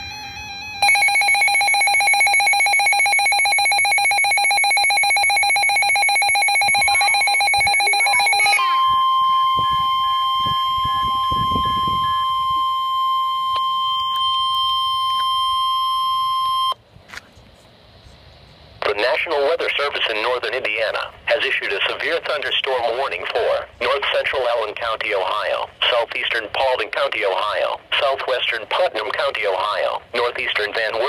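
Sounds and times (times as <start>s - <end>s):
pulsing electronic alarm: 0.0s - 16.8s
steady warning tone: 0.0s - 16.8s.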